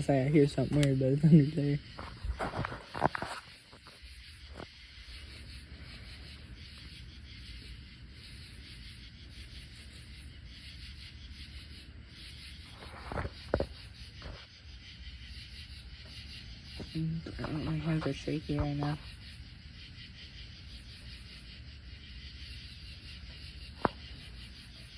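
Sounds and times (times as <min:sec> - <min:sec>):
faint rubbing and scraping: 0:00.0 - 0:07.0, 0:12.5 - 0:14.7.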